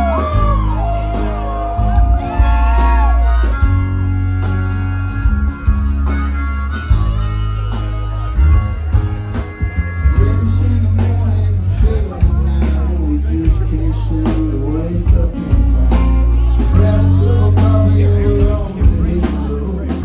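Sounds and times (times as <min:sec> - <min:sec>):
harmonica bending notes: 0:00.0 - 0:12.8
live band playing: 0:00.0 - 0:20.0.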